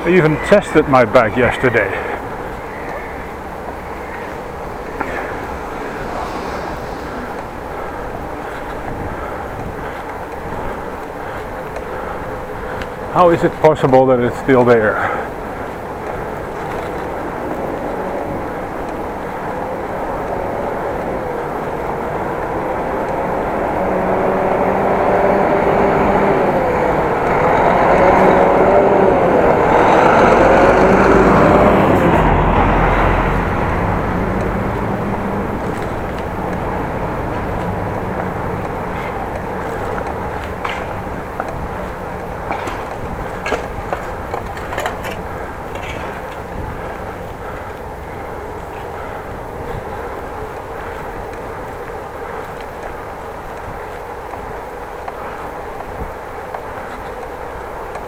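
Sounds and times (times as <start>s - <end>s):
bicycle riding noise: 0.0s - 58.0s
city traffic: 0.0s - 58.0s
vehicle engine passing: 0.9s - 10.4s, 22.0s - 49.3s.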